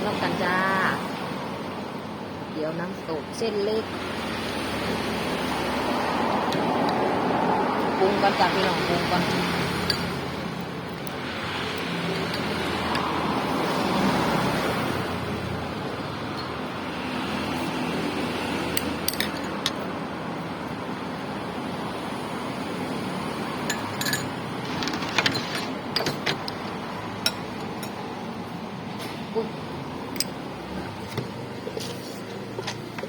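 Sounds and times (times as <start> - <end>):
steady background noise: 0.0 - 33.0
utensils clinking against bowl: 9.8 - 10.3, 12.0 - 13.0, 18.8 - 19.8, 23.6 - 28.0.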